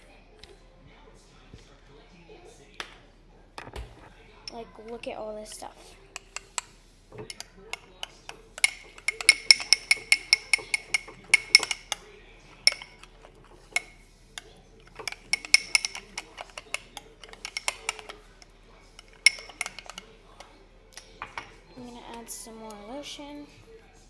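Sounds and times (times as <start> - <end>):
spoon clinking against bowl: 6.1 - 22.2.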